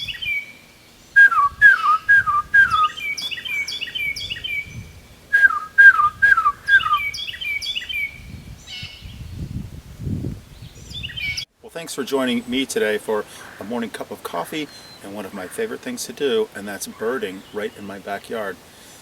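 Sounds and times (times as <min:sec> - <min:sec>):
bird whistling down-slurred notes: 0:00.0 - 0:00.6, 0:01.2 - 0:09.1
low rumbling noise: 0:00.0 - 0:11.3
wren singing rolling phrases: 0:00.0 - 0:19.0.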